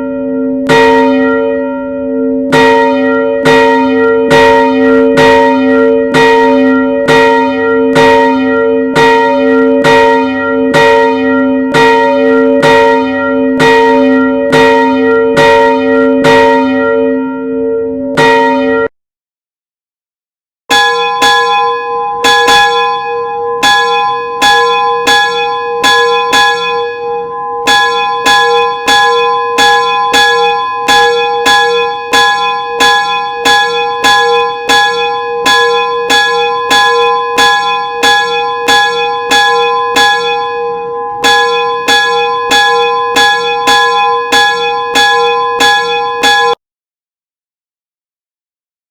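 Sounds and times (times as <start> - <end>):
bells ringing in sequence: 0.0 - 18.9, 20.7 - 46.6.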